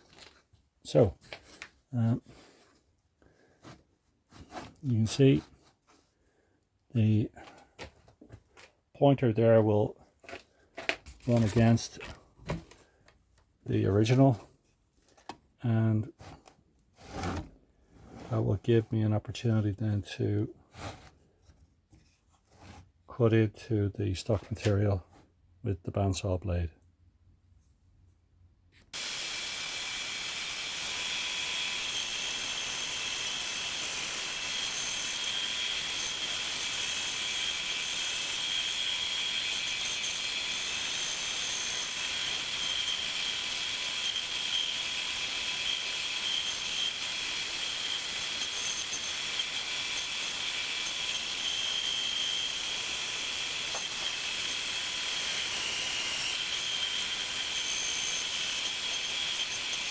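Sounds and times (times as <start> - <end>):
bandsaw cutting wood: 11.2 - 12.7, 28.9 - 59.9
electric drill whine: 29.0 - 59.9.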